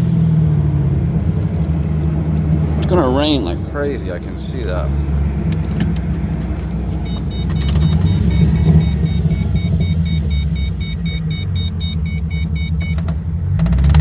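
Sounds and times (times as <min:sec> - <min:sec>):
car engine and road noise: 0:00.0 - 0:14.0
rapid high electronic beeps: 0:07.0 - 0:13.1.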